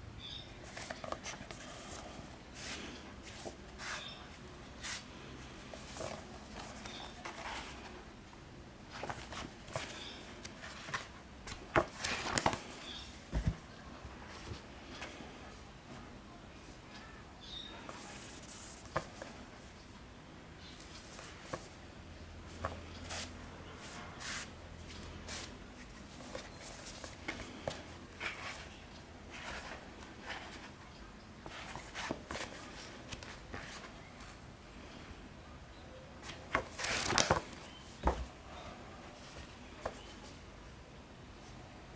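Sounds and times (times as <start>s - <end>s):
paper rustling: 8.9s - 13.6s, 36.2s - 38.3s
taps of paper and covers: 13.3s - 13.6s.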